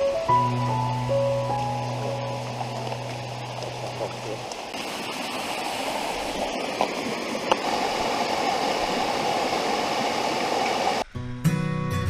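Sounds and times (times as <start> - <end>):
flowing water rushing: 0.0 - 11.0.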